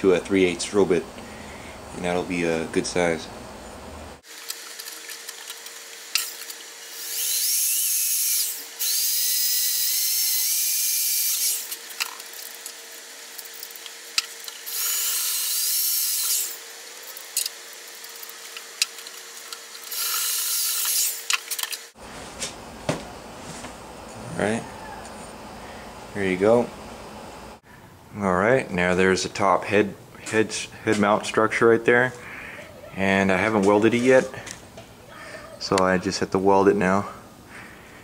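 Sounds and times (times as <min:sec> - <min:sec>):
electric drill whining through metal: 0:06.1 - 0:21.9.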